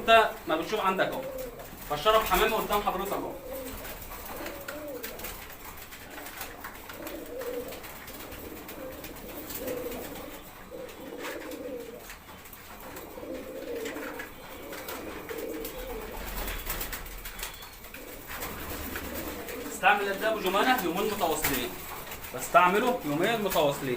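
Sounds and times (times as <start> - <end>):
pigeons cooing: 0.0 - 23.9.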